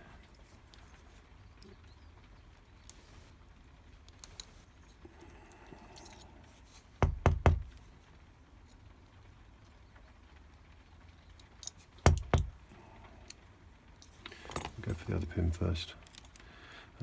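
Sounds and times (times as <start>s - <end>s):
loud knocks: 7.0s - 7.7s.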